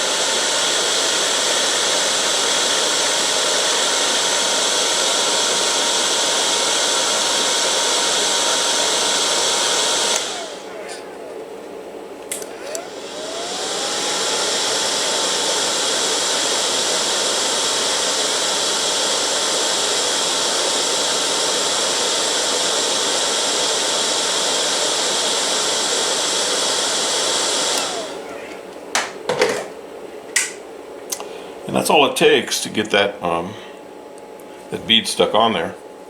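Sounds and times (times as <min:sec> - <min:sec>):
cooling fan with motor whine: 0:00.0 - 0:36.0
handling clicks: 0:12.2 - 0:12.9.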